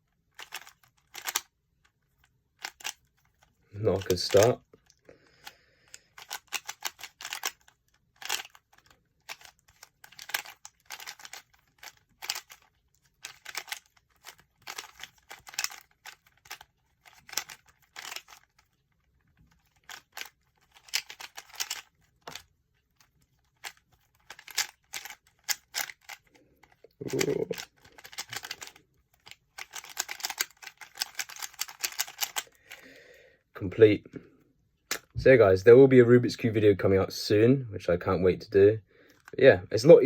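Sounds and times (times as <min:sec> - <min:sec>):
puzzle cube plastic clicking: 0:00.0 - 0:32.8, 0:34.8 - 0:35.2, 0:39.1 - 0:39.4.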